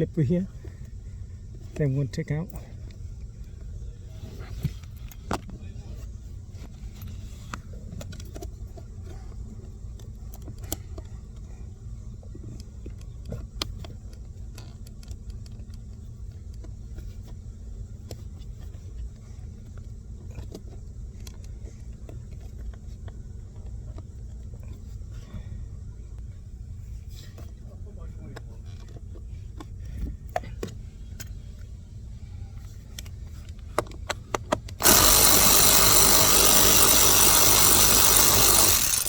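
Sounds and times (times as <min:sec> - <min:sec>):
hand tools clicking on metal: 0:34.7 - 0:39.0.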